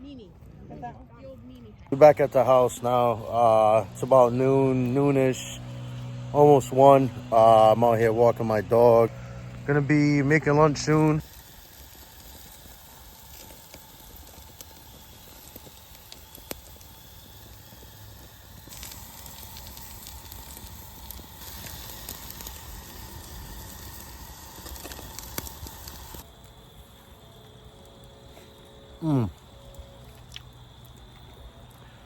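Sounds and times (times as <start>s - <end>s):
sausages sizzling: 2.0s - 32.0s.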